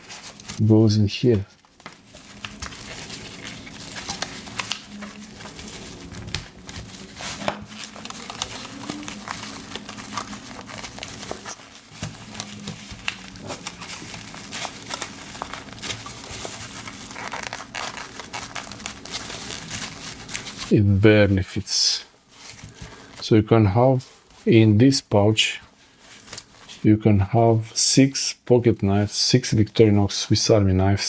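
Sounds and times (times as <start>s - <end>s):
fabric pouch rustling and scraping: 0.0s - 20.8s.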